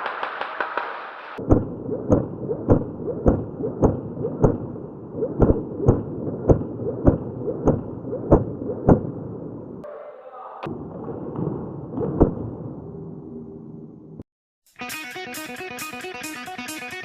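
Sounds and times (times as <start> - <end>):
heavy booming thumps: 1.4 - 4.7.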